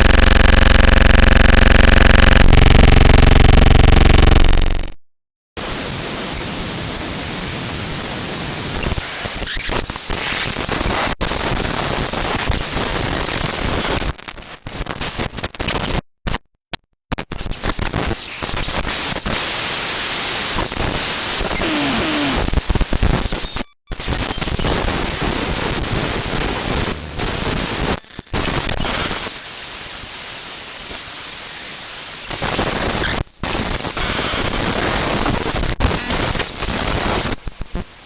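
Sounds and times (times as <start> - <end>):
crackling static: 0.0 - 4.9, 5.7 - 16.0, 17.1 - 38.0.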